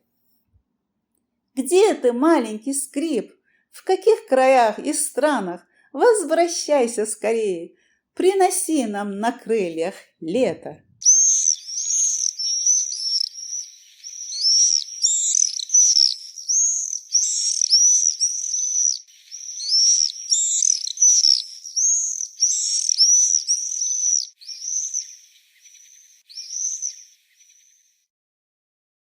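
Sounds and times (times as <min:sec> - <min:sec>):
high-pitched bird chirps: 0:11.0 - 0:27.9.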